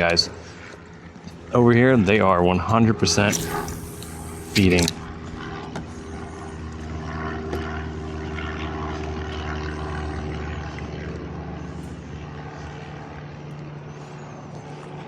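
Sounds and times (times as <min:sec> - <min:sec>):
motor engine droning: 0:03.1 - 0:06.2.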